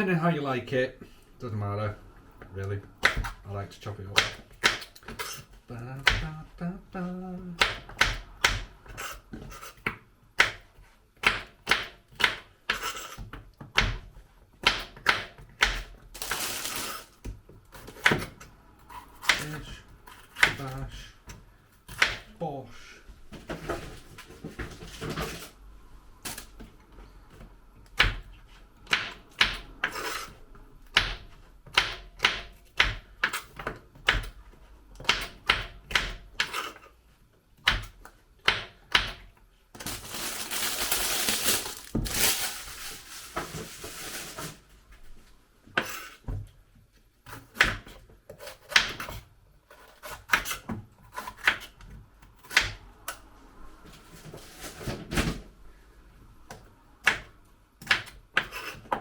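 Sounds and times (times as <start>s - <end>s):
knife chopping on chopping board: 3.0s - 3.4s, 4.2s - 5.4s, 7.6s - 16.0s, 17.2s - 18.4s, 19.2s - 20.7s, 21.9s - 22.3s, 28.9s - 34.4s, 35.0s - 36.9s, 47.3s - 49.2s, 57.0s - 59.0s
rustling noise: 39.8s - 45.4s, 53.8s - 55.1s.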